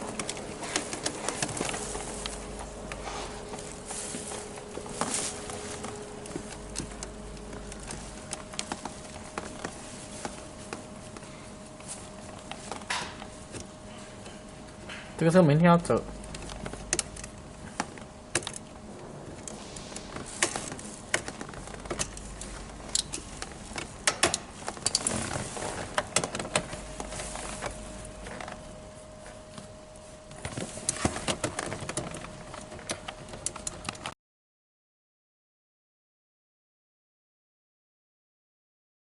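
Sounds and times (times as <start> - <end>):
faint steady hum: 0.0 - 34.2
hand tools clicking and rattling: 15.9 - 28.6.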